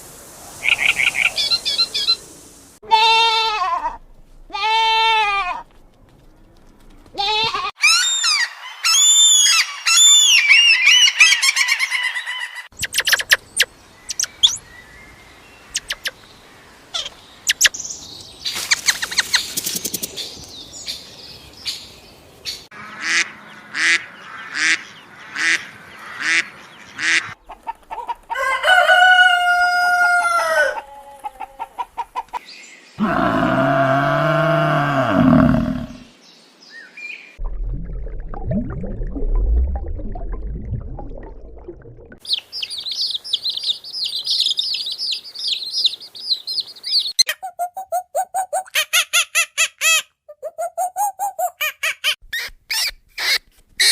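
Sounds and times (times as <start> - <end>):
long animal call: 33.0 - 36.1.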